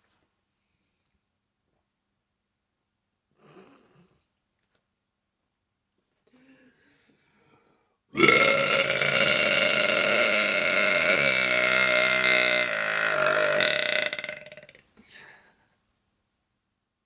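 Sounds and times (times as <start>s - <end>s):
woman belching: 8.2s - 14.8s.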